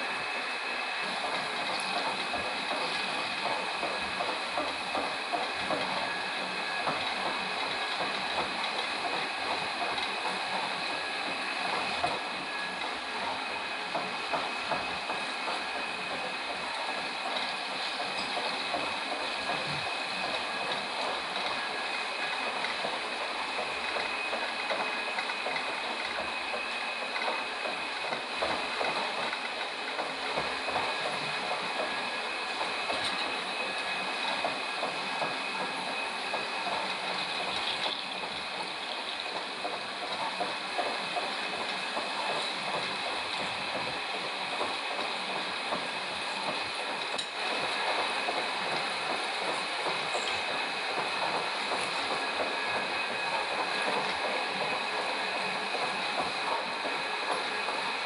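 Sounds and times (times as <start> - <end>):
metal lathe running: 0.0 - 58.0.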